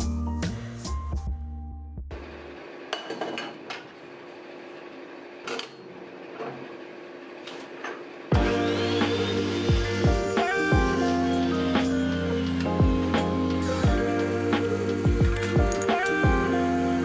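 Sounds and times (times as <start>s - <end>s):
background music: 8.3s - 17.0s
metal parts clinking: 15.4s - 16.2s.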